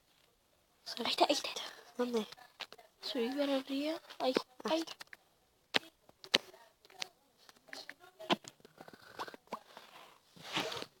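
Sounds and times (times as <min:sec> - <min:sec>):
faint breathy murmuring: 0:08.6 - 0:10.3.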